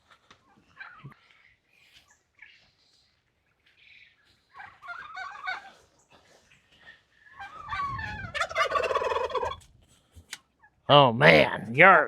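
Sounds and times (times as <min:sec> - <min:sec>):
turkeys calling: 0:00.1 - 0:09.7.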